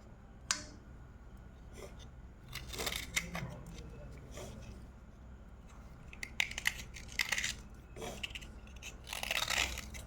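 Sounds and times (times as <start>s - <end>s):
slate pencil crunching in teeth: 6.0s - 10.0s.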